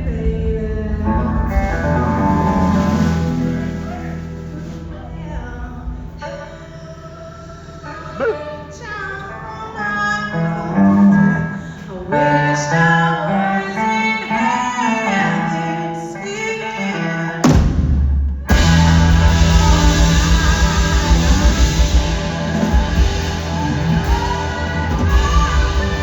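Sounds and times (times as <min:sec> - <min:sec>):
rock band with drums: 0:00.0 - 0:06.1, 0:17.4 - 0:26.0
bending vocal: 0:00.0 - 0:17.6, 0:18.4 - 0:26.0
guitar lines: 0:18.5 - 0:26.0.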